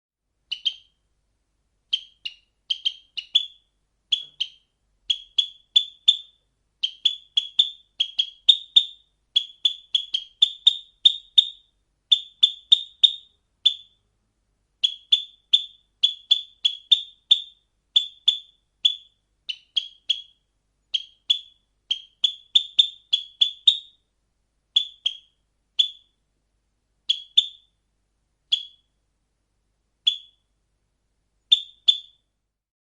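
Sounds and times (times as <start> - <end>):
sparrow chirping: 0.5 - 1.0, 1.9 - 14.0, 14.8 - 24.0, 24.7 - 26.2, 27.1 - 27.8, 28.5 - 29.0, 30.0 - 30.5, 31.4 - 32.3.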